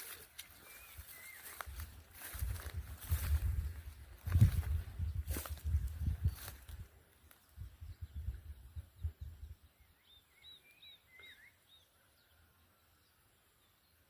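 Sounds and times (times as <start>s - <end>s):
bird chirping: 0.0s - 2.0s, 6.1s - 14.0s.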